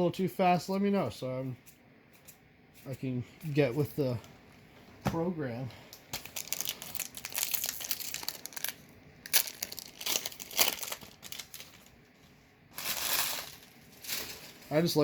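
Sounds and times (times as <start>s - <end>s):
foil wrapper crinkling: 5.9s - 12.1s, 12.7s - 15.0s
foil pack ripping open: 6.2s - 12.0s, 12.7s - 14.7s.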